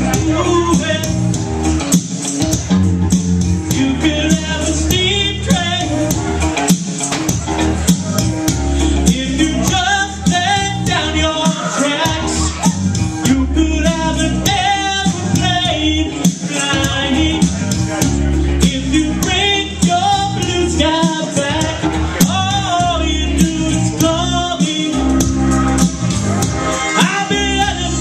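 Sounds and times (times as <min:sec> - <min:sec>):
person singing over a band: 0:08.8 - 0:17.7, 0:18.6 - 0:25.3, 0:26.7 - 0:28.0.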